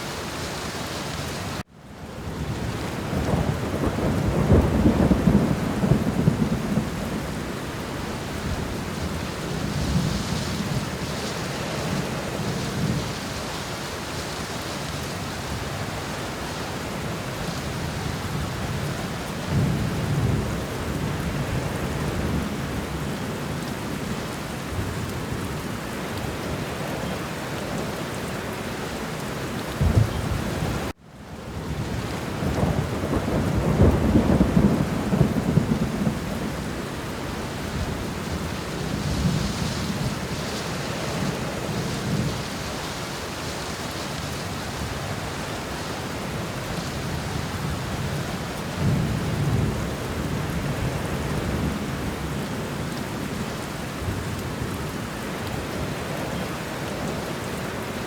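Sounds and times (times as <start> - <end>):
steady rain: 0.0 - 58.0
rolling thunder: 2.5 - 7.6, 29.7 - 30.9, 31.6 - 42.7, 46.4 - 53.4.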